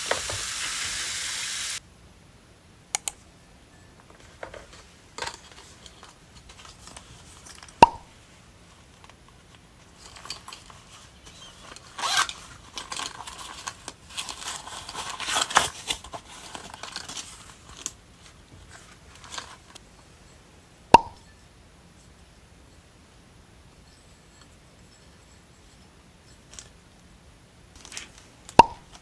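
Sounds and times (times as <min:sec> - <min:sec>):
sharp click: 0:03.0 - 0:03.2
plastic packaging crinkling and tearing: 0:10.1 - 0:19.7.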